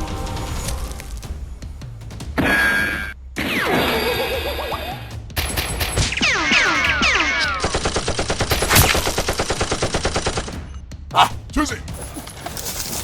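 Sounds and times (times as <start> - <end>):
rapid automatic gunfire: 5.4 - 10.7.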